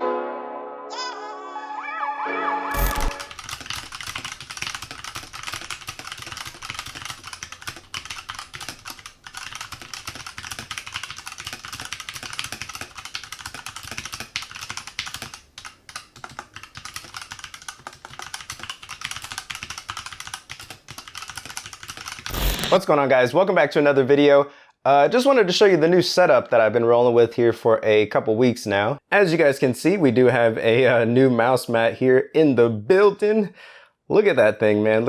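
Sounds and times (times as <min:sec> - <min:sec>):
typing on mechanical keyboard: 0:02.7 - 0:22.8.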